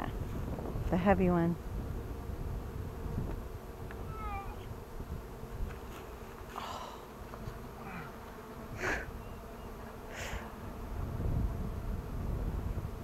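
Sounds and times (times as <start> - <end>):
bees buzzing: 0.0 - 13.0.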